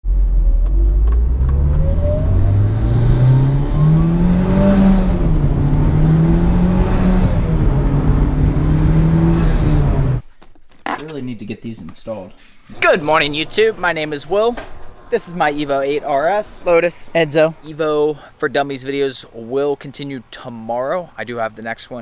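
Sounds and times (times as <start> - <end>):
turbocharged car engine accelerating: 0.1 - 10.2, 12.8 - 18.2.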